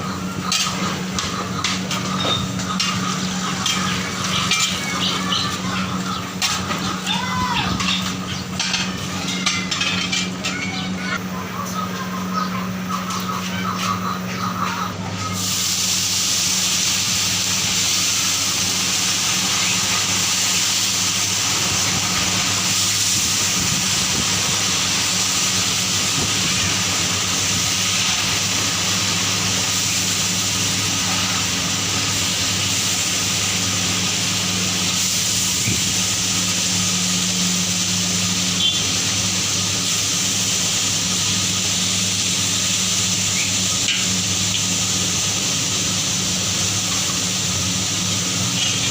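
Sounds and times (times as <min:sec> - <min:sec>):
steady hissing: 0:00.0 - 0:48.9.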